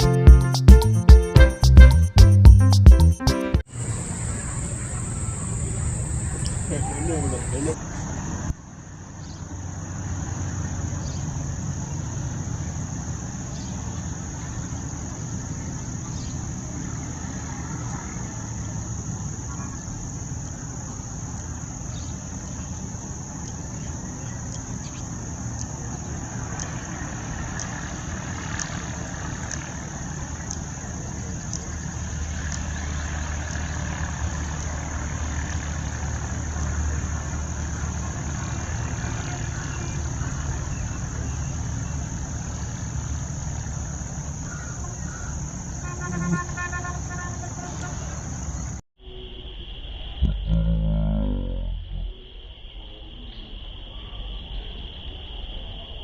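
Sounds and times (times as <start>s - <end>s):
high-pitched hiss: 3.0s - 7.8s
faint ticks: 23.0s - 32.8s, 34.5s - 34.8s
low rumble: 50.2s - 52.3s.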